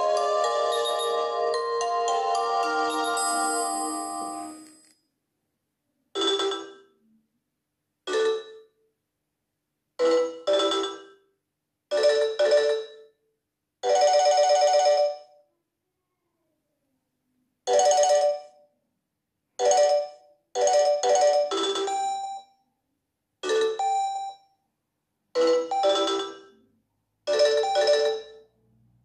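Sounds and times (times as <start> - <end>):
chime-like electronic tones: 0.0 - 4.9
phone ringtone tune: 0.0 - 4.9, 6.2 - 7.0, 8.1 - 8.8, 10.0 - 11.2, 11.9 - 13.2, 13.8 - 15.4, 17.7 - 18.6, 19.6 - 22.6, 23.4 - 24.5, 25.4 - 26.6, 27.3 - 28.6.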